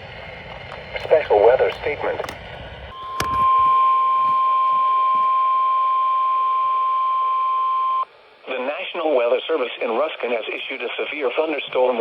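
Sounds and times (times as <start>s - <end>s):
steady high alarm tone: 2.9s - 8.0s.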